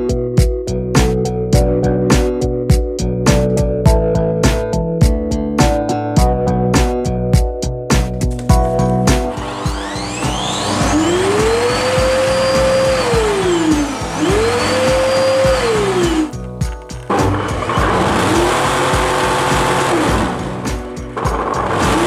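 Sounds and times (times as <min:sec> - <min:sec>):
background music with a beat: 0:00.0 - 0:22.0
vacuum cleaner motor whine: 0:09.3 - 0:16.4, 0:17.2 - 0:22.0.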